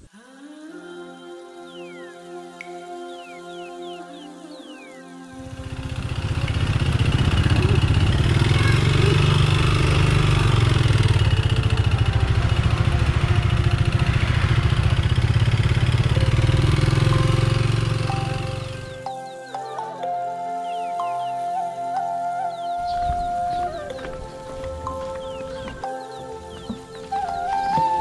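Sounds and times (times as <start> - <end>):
small engine running: 5.3 - 19.2.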